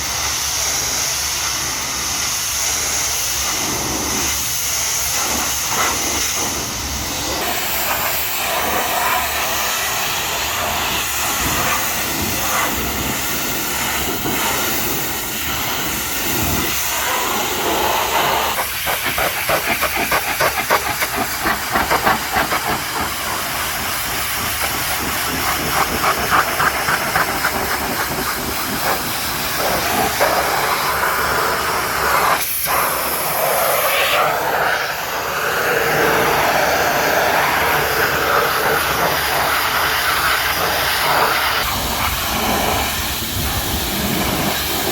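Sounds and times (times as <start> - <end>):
pressure washer spraying water: 0.0 - 44.9
fluttering water spatter: 2.4 - 44.9.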